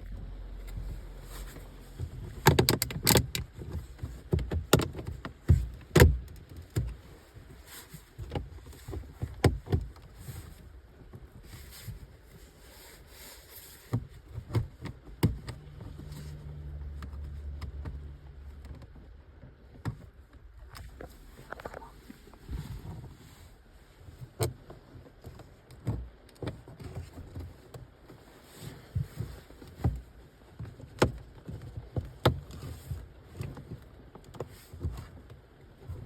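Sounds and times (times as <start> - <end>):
low steady hum: 0.0 - 9.2.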